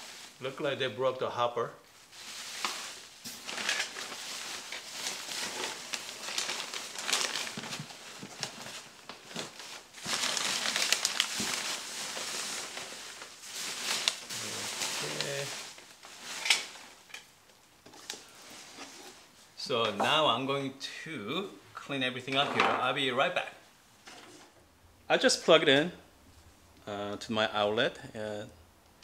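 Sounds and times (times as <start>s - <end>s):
packing material crinkling: 2.0s - 17.1s.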